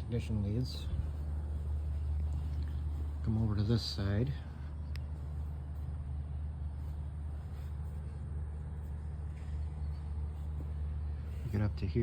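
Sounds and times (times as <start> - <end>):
faint background noise: 0.0 - 12.0
low droning hum: 0.0 - 12.0.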